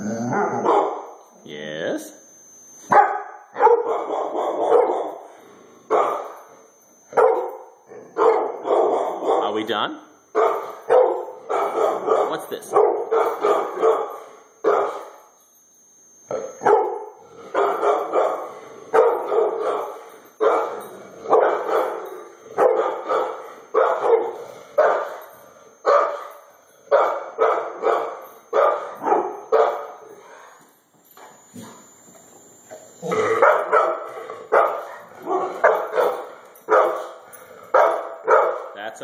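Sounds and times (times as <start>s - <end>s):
dog barking: 0.4s - 1.1s, 2.9s - 5.2s, 5.9s - 6.3s, 7.2s - 9.6s, 10.4s - 15.1s, 16.6s - 25.2s, 25.9s - 26.3s, 26.9s - 30.0s, 33.4s - 38.8s.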